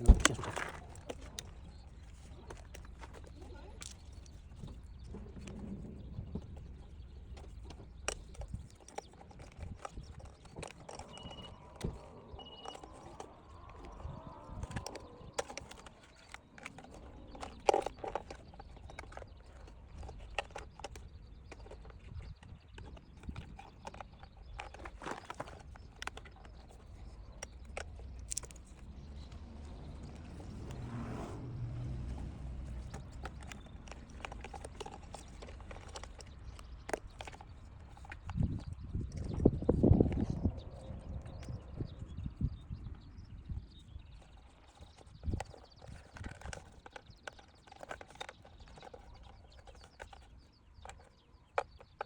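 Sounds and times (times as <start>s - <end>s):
clicks and knocks of car parts: 0.0s - 1.5s.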